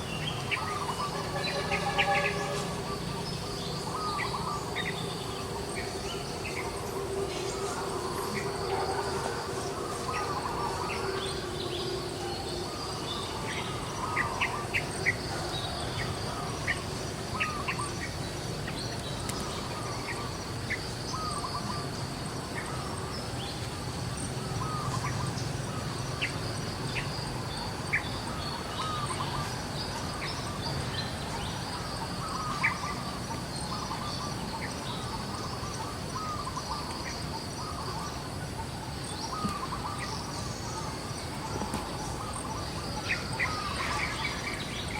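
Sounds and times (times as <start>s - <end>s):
bird calls: 0.0s - 44.9s
high-pitched insect drone: 0.0s - 44.9s.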